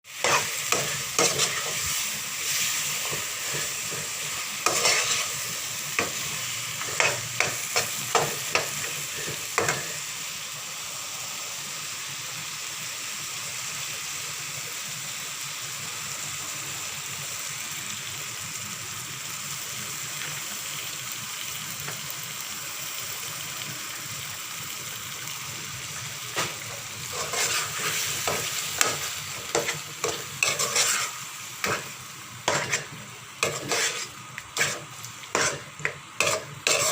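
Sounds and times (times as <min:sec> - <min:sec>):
curry sizzling in a frying pan: 0:00.0 - 0:36.9
utensil scraping a pan: 0:00.2 - 0:07.9, 0:26.4 - 0:36.9.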